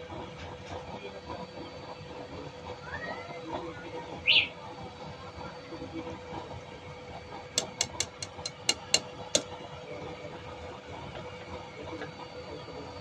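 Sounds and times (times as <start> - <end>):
steady background hum: 0.0 - 13.0
sharp ringing knocks: 7.6 - 9.0.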